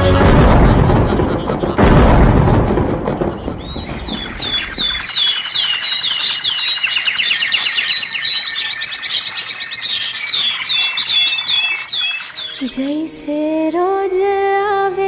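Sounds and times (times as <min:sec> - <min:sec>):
birds chirping: 0:00.5 - 0:14.9
high rattling bird trill: 0:02.8 - 0:12.8
swooping bird whistles: 0:04.1 - 0:12.7.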